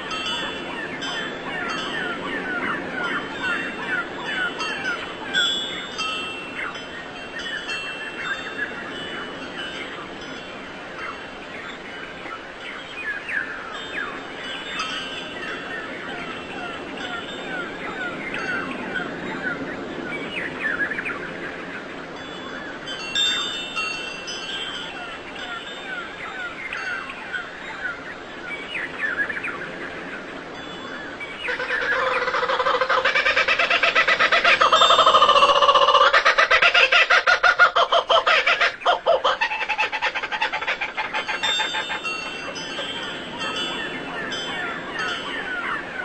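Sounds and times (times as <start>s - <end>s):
faint ringing chime tones: 0.0s - 21.6s, 22.2s - 31.9s, 41.3s - 46.0s
birds chirping: 0.0s - 46.0s
rapidly pulsing bird call: 31.2s - 46.0s.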